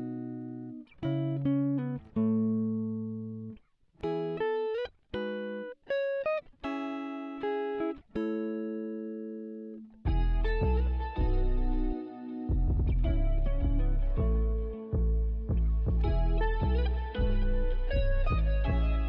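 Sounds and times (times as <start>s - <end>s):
plucked guitar melody: 0.0s - 19.0s
deep bass: 10.1s - 19.0s.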